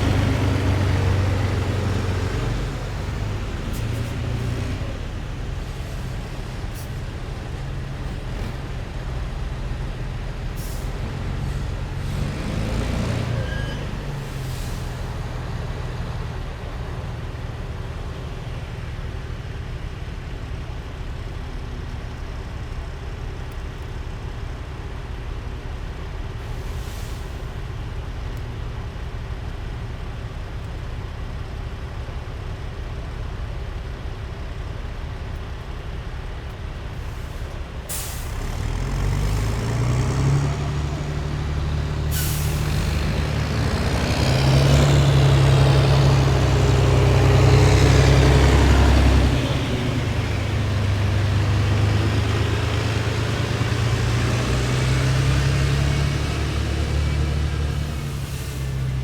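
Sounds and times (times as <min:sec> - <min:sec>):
heavy diesel vehicles passing: 0:00.0 - 0:59.0
air brakes hissing: 0:02.5 - 0:08.6, 0:10.5 - 0:12.3, 0:13.2 - 0:15.3, 0:26.4 - 0:27.7, 0:37.0 - 0:39.8, 0:41.8 - 0:43.4, 0:57.6 - 0:59.0.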